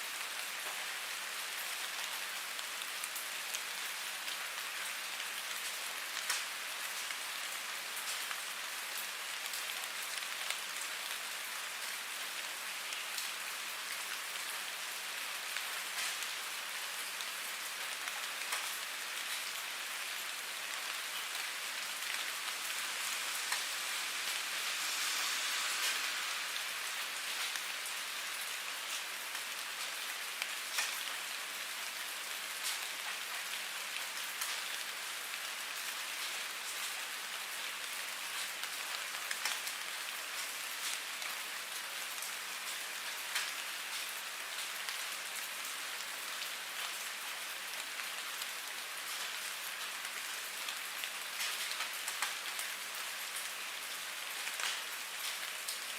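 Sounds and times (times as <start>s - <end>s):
rain on a hard surface: 0.0s - 55.9s
raindrops splashing: 17.0s - 45.1s.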